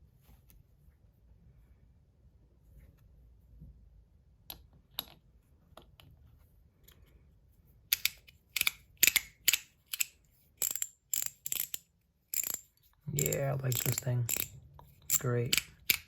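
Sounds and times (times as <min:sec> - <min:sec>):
fidget coin ratchet clicks: 0:07.9 - 0:16.0.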